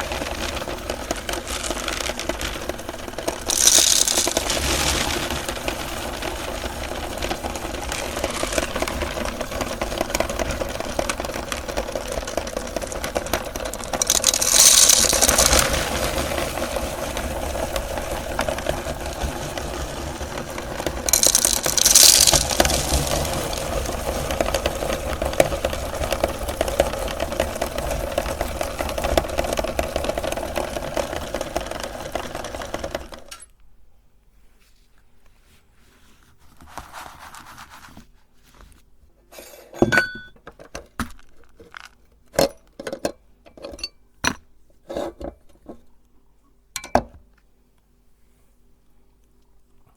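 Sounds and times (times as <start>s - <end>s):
electric meat grinder running: 0.0s - 32.9s
candies crunching: 0.1s - 9.2s, 12.0s - 16.8s, 21.0s - 25.0s.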